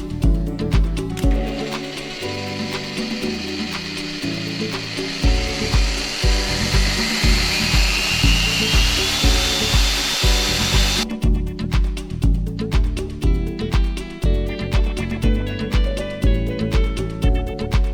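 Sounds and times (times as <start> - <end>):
music with bass beat: 0.0 - 17.9
drilling machine whining: 1.5 - 11.1.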